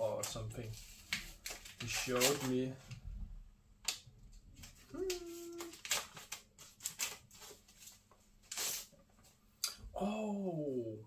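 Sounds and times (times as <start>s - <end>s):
packaging rustling and crinkling: 0.2s - 3.0s, 4.5s - 9.0s.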